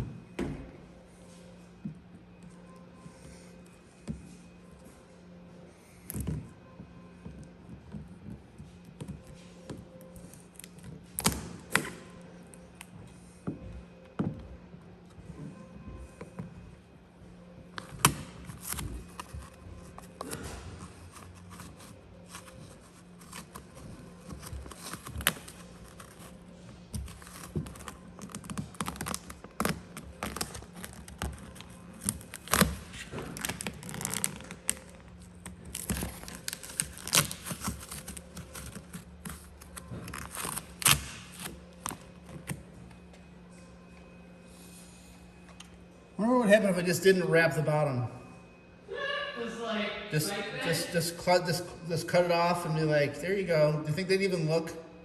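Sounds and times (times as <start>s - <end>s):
vinyl film crinkling and peeling: 17.8s - 42.6s.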